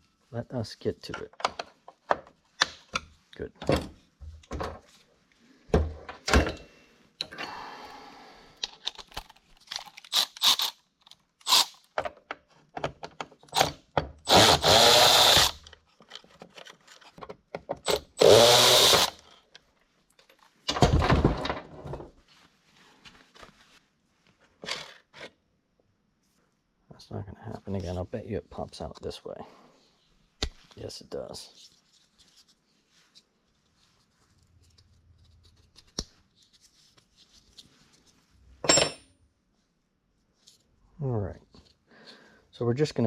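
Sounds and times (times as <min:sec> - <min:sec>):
clicks and knocks of parts: 0:01.0 - 0:04.9, 0:08.6 - 0:14.2, 0:15.6 - 0:18.0.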